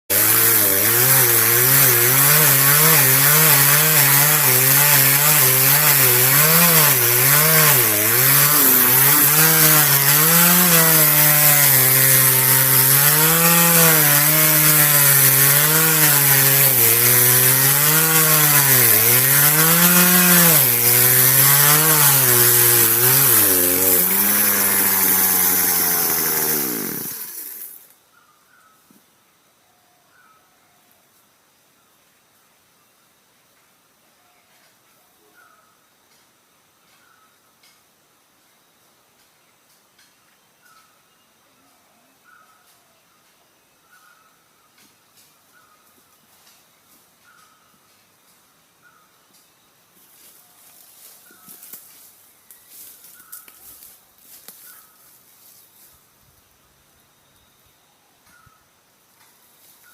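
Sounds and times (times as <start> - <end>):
chainsaw cutting wood: 0.1 - 27.9.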